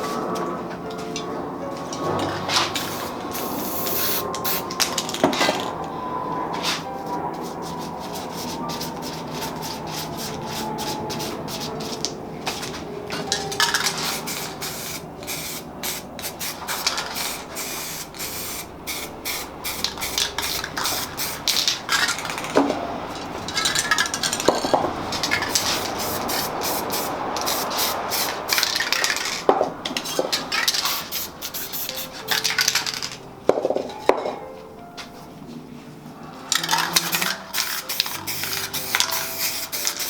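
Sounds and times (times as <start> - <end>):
spray paint cans hissing: 1.9 - 6.0, 6.6 - 33.2, 36.5 - 40.0
rubbing and scraping: 6.6 - 14.6.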